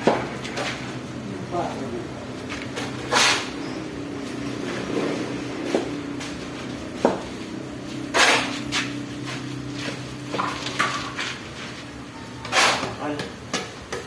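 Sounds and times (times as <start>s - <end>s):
steady low hum: 0.0s - 12.5s.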